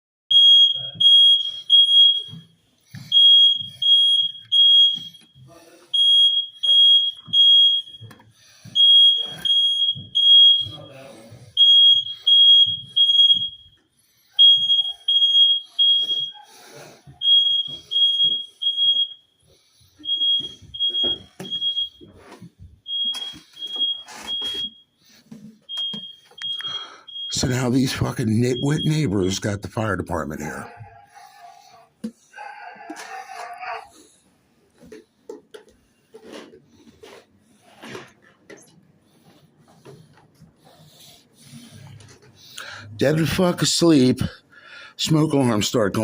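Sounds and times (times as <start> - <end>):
smoke alarm beeping: 0.3 - 30.8.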